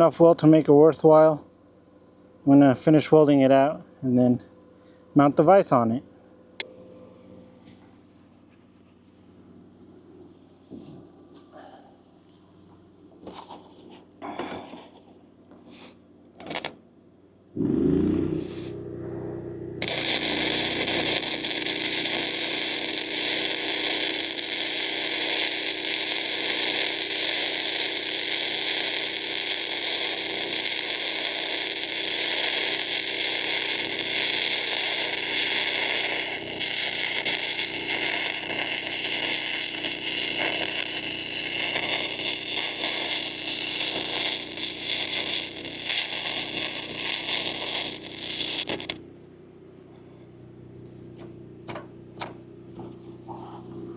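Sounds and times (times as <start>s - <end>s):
welding arc crackling and hissing: 16.4s - 16.8s, 19.8s - 49.0s.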